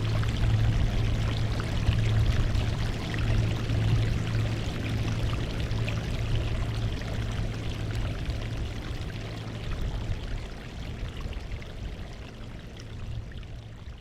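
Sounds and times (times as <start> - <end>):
low rumble: 0.0 - 10.3.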